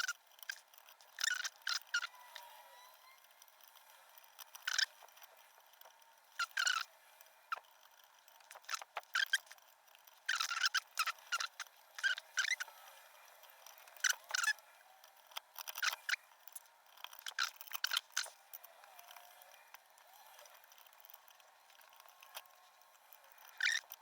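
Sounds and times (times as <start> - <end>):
lock pick clicking and scraping: 13.5 - 24.0.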